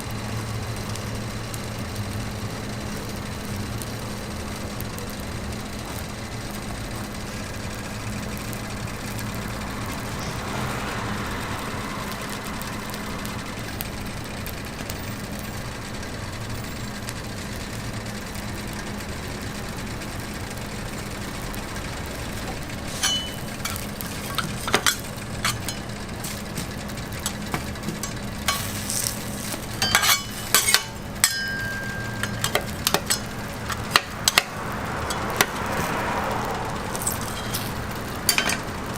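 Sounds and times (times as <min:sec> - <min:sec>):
food frying on a griddle: 0:00.0 - 0:38.9
steady low hum: 0:00.0 - 0:38.9
metal utensils clinking: 0:22.4 - 0:35.8, 0:36.9 - 0:38.8.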